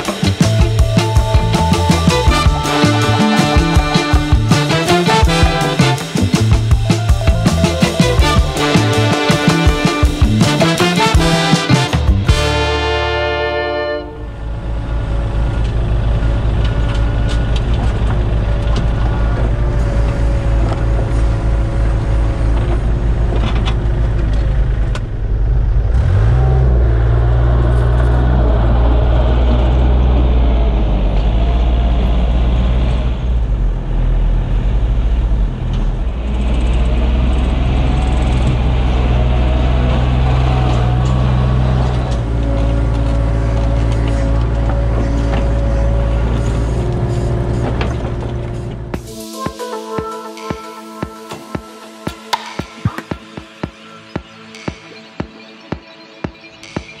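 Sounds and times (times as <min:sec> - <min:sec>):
background music with held notes: 0:00.0 - 0:14.2, 0:38.4 - 0:57.0
deep pulsing bass: 0:00.0 - 0:49.1.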